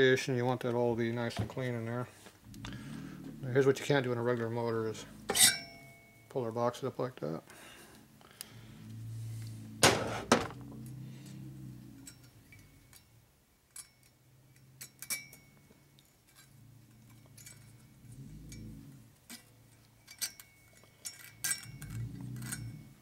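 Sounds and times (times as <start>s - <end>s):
metallic clicks and clinks: 11.9s - 23.0s.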